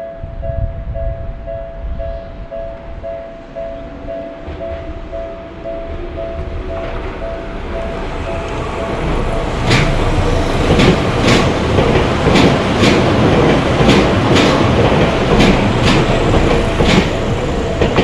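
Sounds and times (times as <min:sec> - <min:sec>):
train rumble: 0:00.0 - 0:18.0
train wheels clacking on rail joints: 0:05.9 - 0:18.0.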